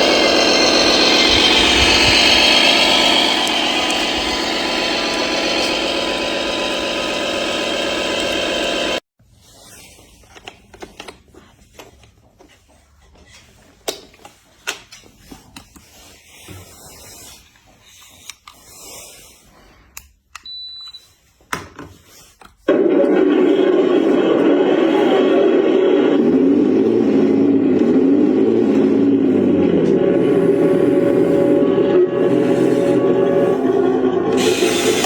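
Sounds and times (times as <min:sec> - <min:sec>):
toy truck motor whirring: 0:00.0 - 0:09.0, 0:23.1 - 0:35.0.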